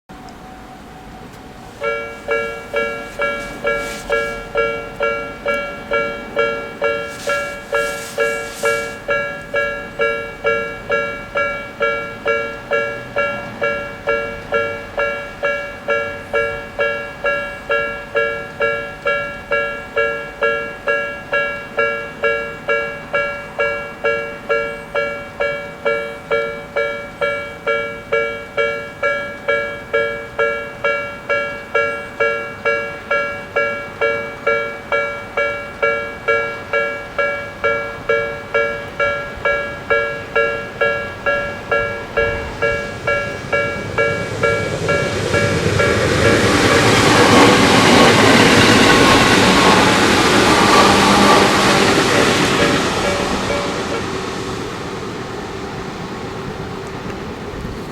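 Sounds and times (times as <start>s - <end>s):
railway crossing warning bell: 0.1s - 57.9s
brief hissing noises: 2.5s - 4.5s, 7.0s - 9.1s.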